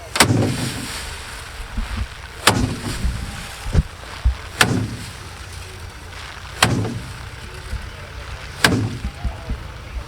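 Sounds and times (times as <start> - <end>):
rice stalks beaten against drum: 0.0 - 10.0.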